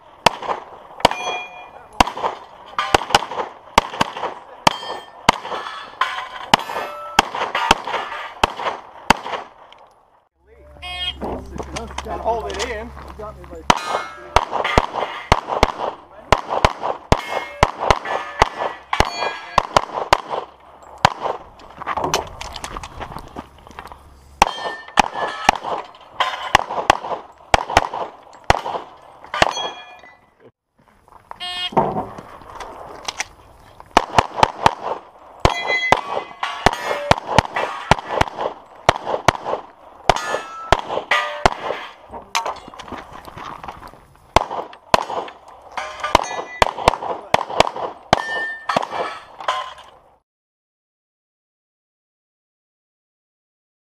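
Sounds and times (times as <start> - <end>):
pistol shots: 0.2 - 9.7, 13.7 - 21.5, 24.4 - 30.0, 33.9 - 43.0, 44.3 - 49.9
steel targets clanging: 1.0 - 3.2, 4.6 - 8.4, 13.6 - 15.4, 17.1 - 19.7, 24.4 - 26.6, 28.9 - 30.4, 35.4 - 38.9, 40.1 - 43.0, 44.7 - 47.0, 48.1 - 50.0.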